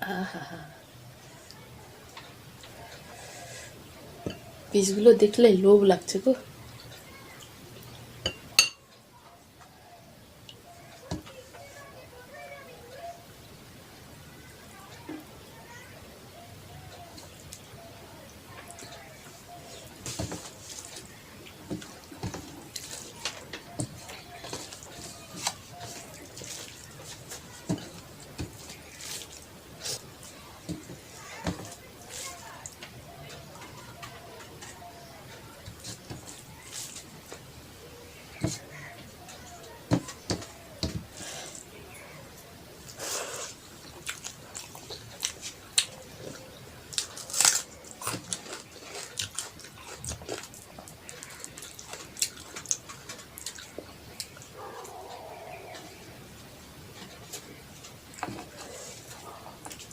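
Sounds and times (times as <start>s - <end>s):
wet chewing and lip smacking: 42.8s - 55.0s.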